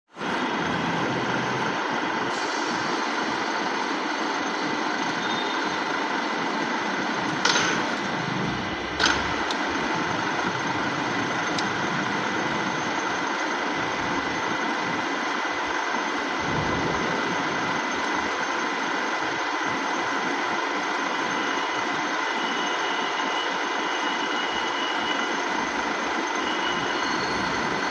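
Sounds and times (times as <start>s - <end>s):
milling machine running: 0.2s - 14.6s.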